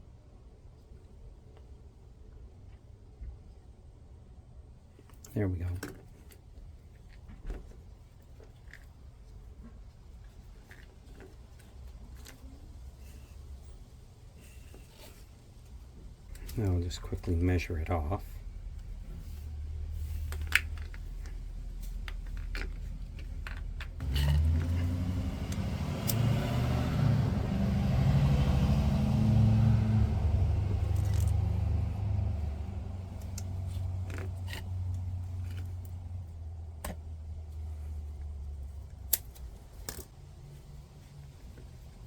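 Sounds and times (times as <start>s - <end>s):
low mechanical rumble: 0.0s - 42.0s
small parts clicking and rattling: 20.0s - 24.9s, 30.9s - 31.4s, 38.7s - 40.3s.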